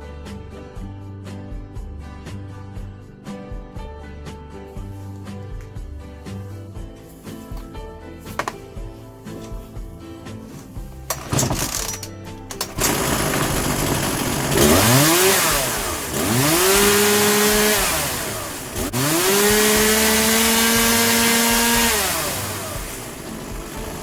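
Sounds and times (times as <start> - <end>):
chainsaw engine idling and revving: 5.0 - 8.6, 10.6 - 24.0.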